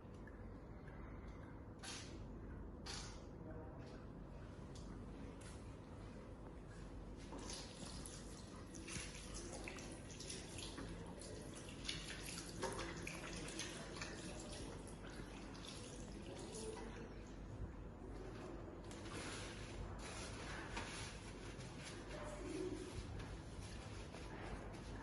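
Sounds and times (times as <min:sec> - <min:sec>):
water running from a tap: 0:07.3 - 0:17.0.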